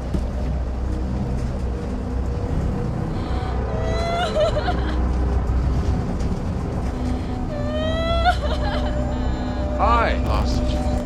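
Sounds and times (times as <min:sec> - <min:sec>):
aircraft engines rumbling: 0:00.0 - 0:11.0.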